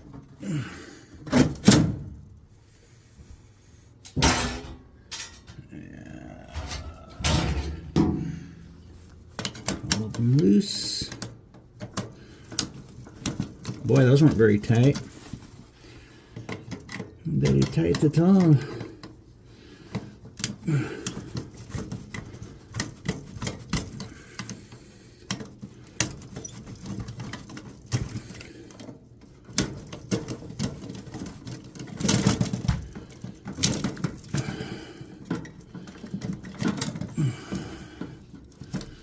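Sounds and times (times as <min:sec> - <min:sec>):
hand tools clicking and scraping metal: 0:09.1 - 0:39.0.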